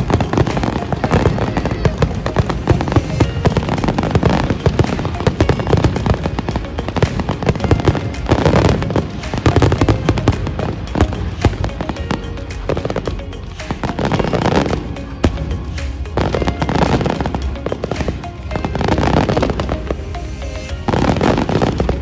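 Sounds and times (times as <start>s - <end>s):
fireworks bangs and crackles: 0.0s - 11.6s
music playing: 0.0s - 22.0s.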